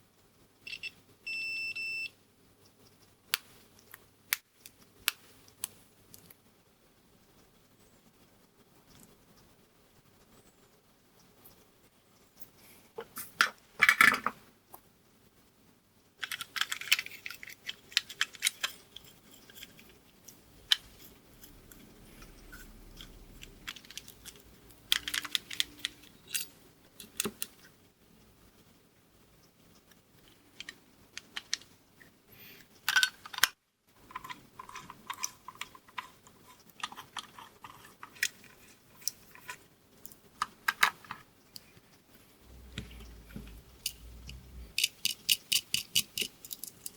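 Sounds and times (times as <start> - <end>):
clicks and clatter of metal parts: 16.2 - 27.5, 32.8 - 41.2, 43.8 - 46.9.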